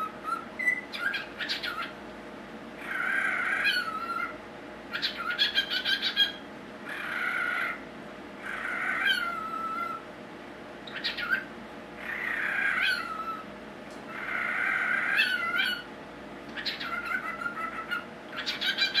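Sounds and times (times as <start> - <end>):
raspy whistled bird calls: 0.0 - 2.0, 16.6 - 19.0.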